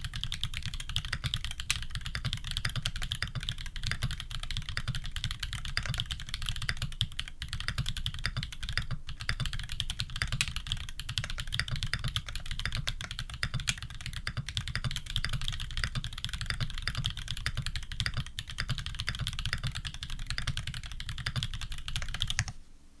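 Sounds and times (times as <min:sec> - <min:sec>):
fast mechanical keyboard typing: 0:00.0 - 0:22.5.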